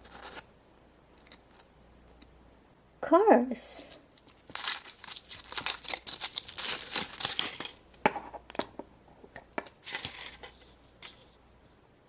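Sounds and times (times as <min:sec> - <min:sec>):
wrapper tearing and crinkling: 0:04.1 - 0:07.8, 0:09.7 - 0:11.2.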